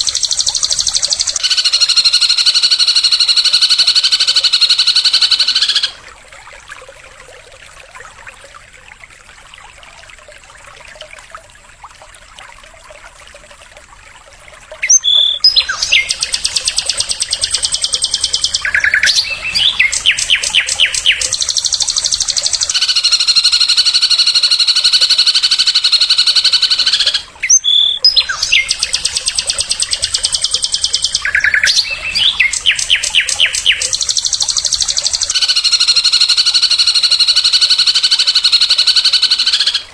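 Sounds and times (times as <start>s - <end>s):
sharp clicking bird notes: 0.0s - 1.6s, 14.8s - 22.8s, 26.9s - 35.6s
songbird buzzing trills: 0.0s - 5.9s, 14.8s - 39.9s.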